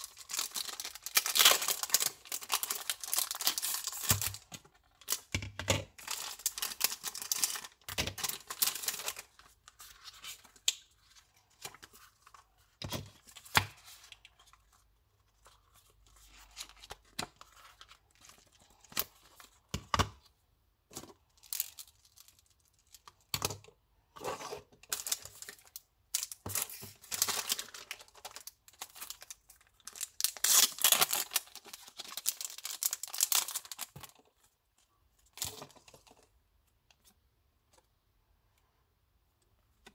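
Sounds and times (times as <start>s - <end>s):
packaging rustling and tearing: 0.0s - 5.3s, 6.0s - 12.4s, 24.8s - 34.3s.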